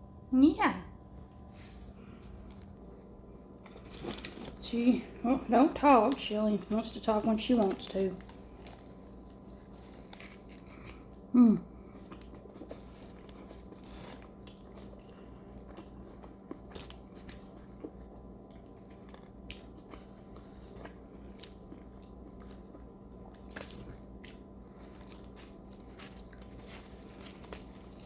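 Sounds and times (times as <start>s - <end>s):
person chewing: 8.2s - 28.0s.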